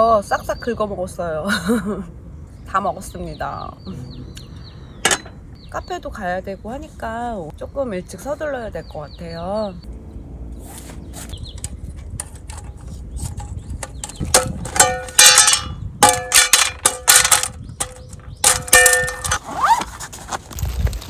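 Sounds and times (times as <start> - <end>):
metal cookware clanking: 5.0 - 5.4, 13.8 - 19.4.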